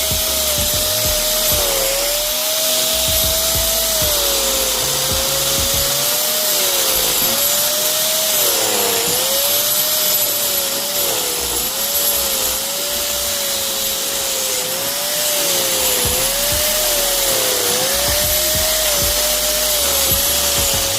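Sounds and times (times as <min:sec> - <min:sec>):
angle grinder cutting mortar: 0:00.0 - 0:20.9.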